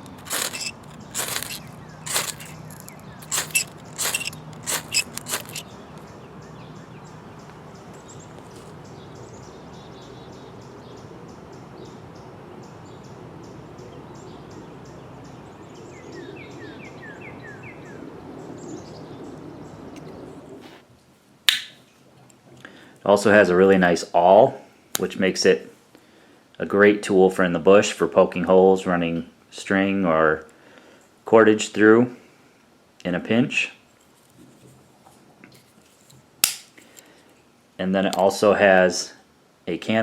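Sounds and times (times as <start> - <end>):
small saw cutting wood: 0.0 - 5.6
sharp click: 21.5 - 21.8, 36.4 - 36.7.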